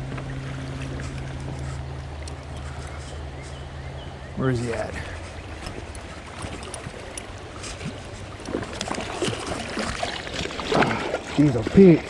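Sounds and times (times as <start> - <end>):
creek water splashing and trickling: 0.0 - 12.0
small splashes and knocks: 5.0 - 12.0.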